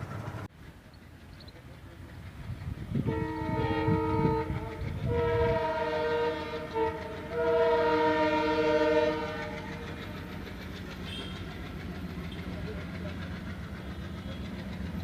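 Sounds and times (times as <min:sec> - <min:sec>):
locomotive engine chugging: 0:00.0 - 0:15.0
locomotive horn blasts: 0:03.0 - 0:09.8, 0:11.1 - 0:11.4.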